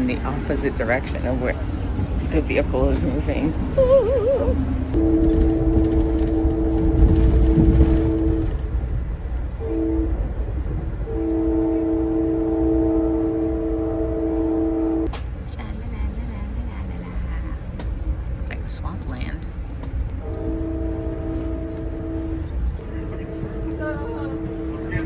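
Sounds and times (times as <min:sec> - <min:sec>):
train rumbling: 0:00.0 - 0:25.0
train horn two-note chord: 0:05.0 - 0:08.5, 0:09.6 - 0:10.2, 0:11.0 - 0:15.1, 0:20.2 - 0:25.0.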